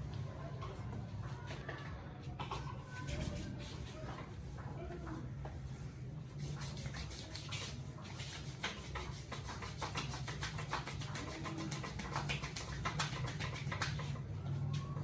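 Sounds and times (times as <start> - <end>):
rubbing strokes over hair: 6.3 - 14.2.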